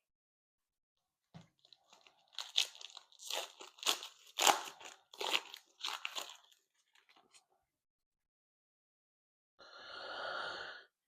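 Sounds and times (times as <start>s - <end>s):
foil wrapper crinkling and tearing: 1.5s - 7.3s.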